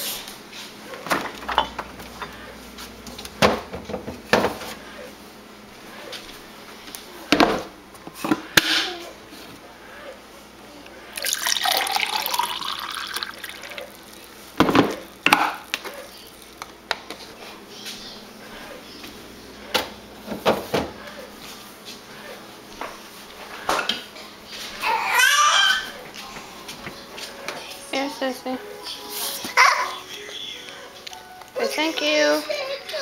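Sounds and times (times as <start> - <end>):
cup and container clunking: 1.3 - 2.4, 11.2 - 13.9
juice pouring into a cup: 11.1 - 16.6.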